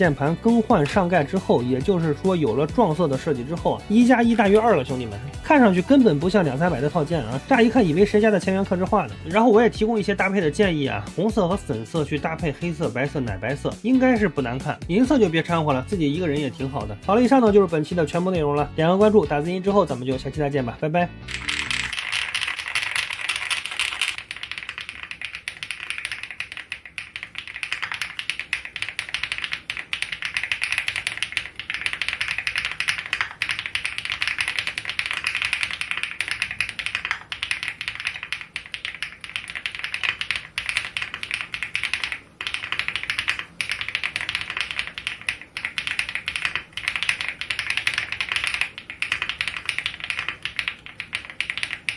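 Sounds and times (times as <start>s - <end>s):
fast typing on mechanical keyboard: 0.0s - 8.9s, 21.3s - 51.9s.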